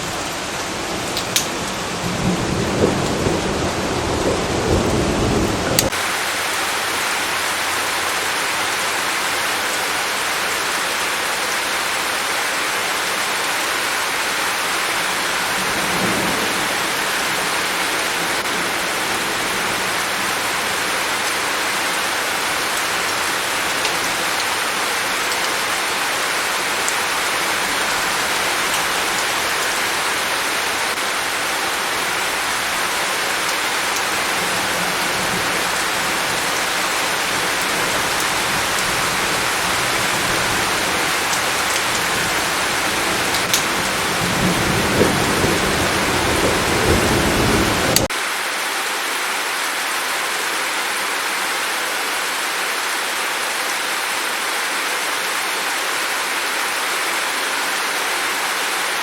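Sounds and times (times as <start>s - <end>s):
heavy rain: 0.0s - 59.0s
thunder rumble: 0.9s - 6.0s, 37.3s - 48.1s.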